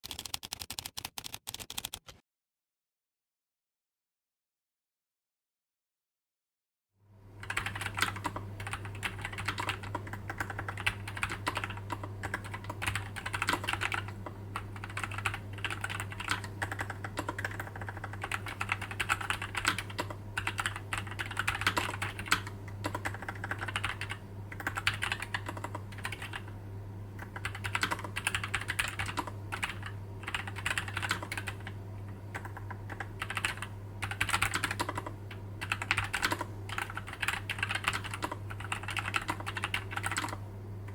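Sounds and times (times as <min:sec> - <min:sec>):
fast typing on mechanical keyboard: 0:00.0 - 0:02.2, 0:07.4 - 0:26.5, 0:27.2 - 0:40.4
steady low hum: 0:07.0 - 0:40.9.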